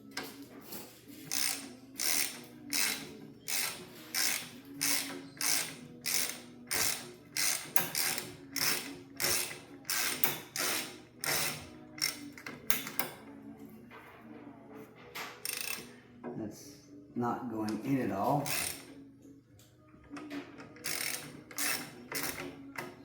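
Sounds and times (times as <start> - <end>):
ratchet wrench clicking: 1.3 - 13.1, 15.5 - 15.9, 18.4 - 18.9, 20.8 - 22.9.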